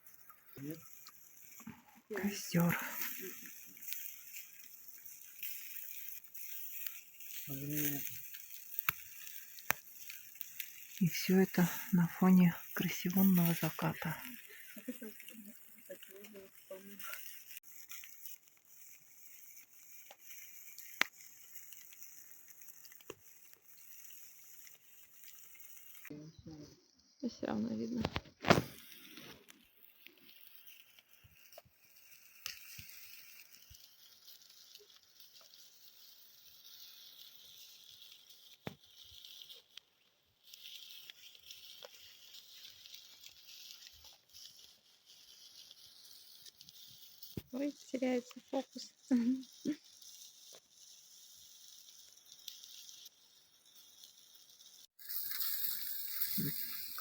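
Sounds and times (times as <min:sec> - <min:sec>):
campfire crackling: 0:00.0 - 0:57.0
faint high hiss: 0:00.1 - 0:18.1.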